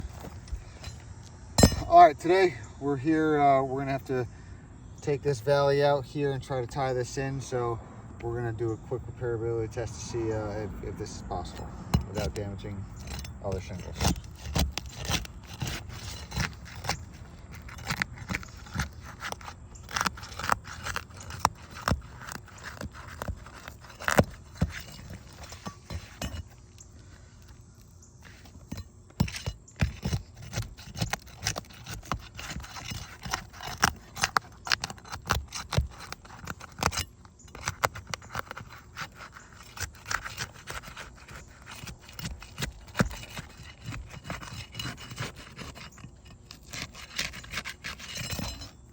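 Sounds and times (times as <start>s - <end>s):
metal tool scraping roof shingles: 9.8s - 26.8s, 28.2s - 48.9s.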